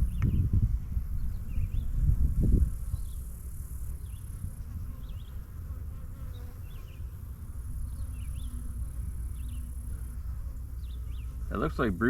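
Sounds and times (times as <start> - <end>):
bees buzzing: 2.6 - 12.0.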